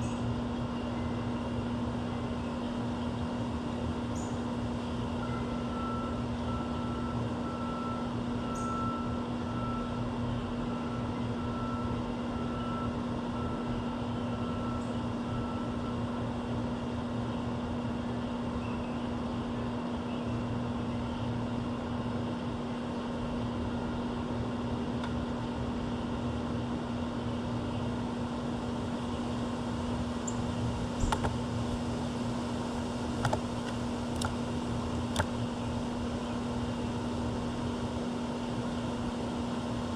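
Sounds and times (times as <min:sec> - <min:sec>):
mechanical hum: 0:00.0 - 0:39.9
sharp clicks: 0:31.0 - 0:31.4, 0:33.2 - 0:34.4.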